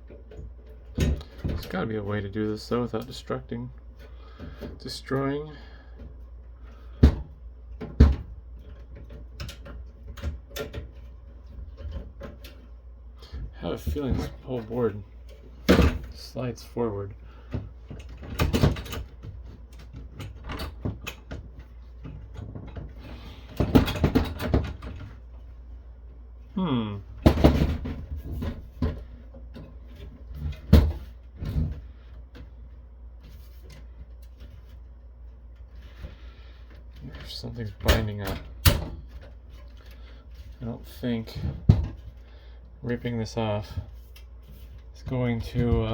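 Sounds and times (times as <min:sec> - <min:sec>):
low steady hum: 0:00.0 - 0:45.9
metal clanks and knocks: 0:17.4 - 0:25.2.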